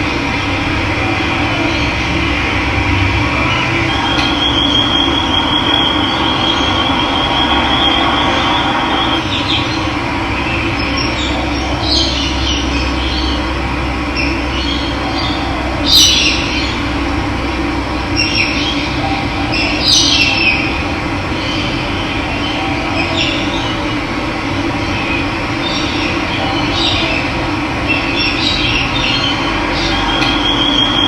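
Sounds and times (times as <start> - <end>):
bird trilling: 3.3 - 9.8, 28.0 - 31.0.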